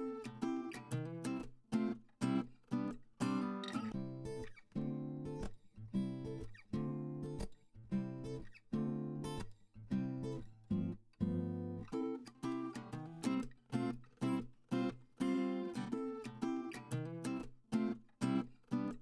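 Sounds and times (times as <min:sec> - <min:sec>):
acoustic guitar strumming: 0:00.0 - 0:05.4, 0:10.0 - 0:19.0.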